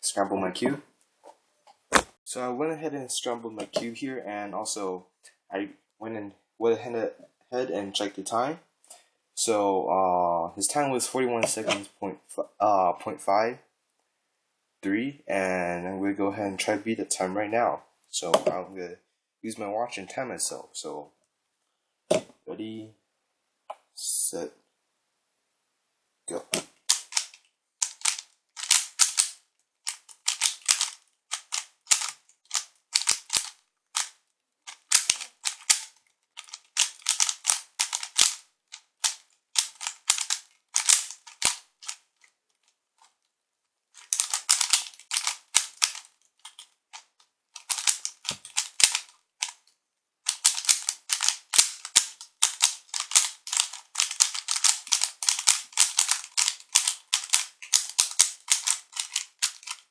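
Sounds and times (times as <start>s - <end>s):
puzzle cube clicking and rattling: 11.3s - 11.9s, 26.4s - 43.2s, 43.9s - 59.9s.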